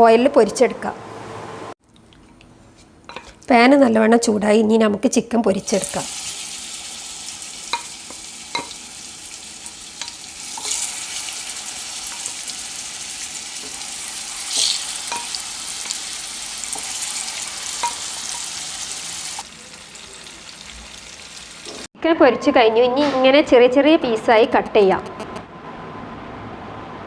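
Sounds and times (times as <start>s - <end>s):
chicken sizzling in hot oil: 5.7s - 21.9s.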